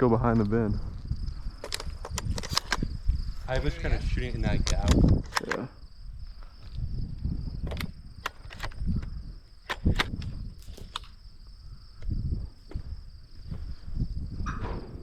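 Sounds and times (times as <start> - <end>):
crickets chirring: 0.0 - 15.0
sharp clicks and knocks: 4.6 - 5.6.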